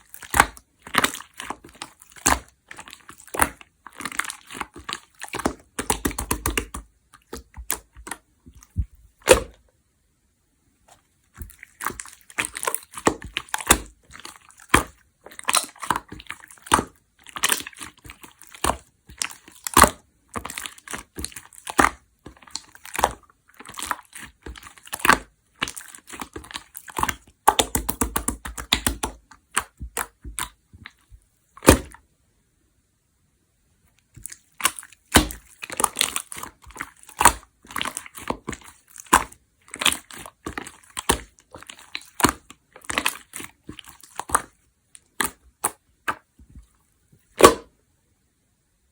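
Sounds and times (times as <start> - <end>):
slime squishing crackles: 0.0 - 9.6, 10.9 - 32.0, 34.0 - 46.7
slime clicking pops: 47.4 - 47.7.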